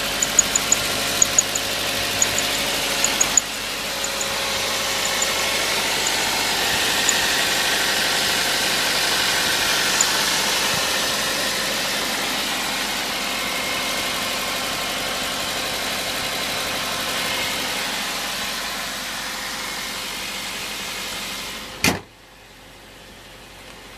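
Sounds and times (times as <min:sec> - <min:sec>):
car engine idling: 0:00.0 - 0:23.9
light ticks: 0:00.1 - 0:04.3, 0:05.0 - 0:05.3
sharp click: 0:00.2 - 0:04.4.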